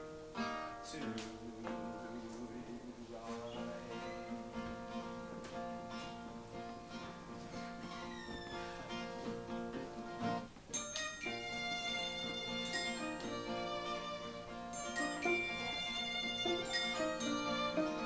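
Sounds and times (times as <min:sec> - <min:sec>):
acoustic guitar playing: 0:00.0 - 0:18.0.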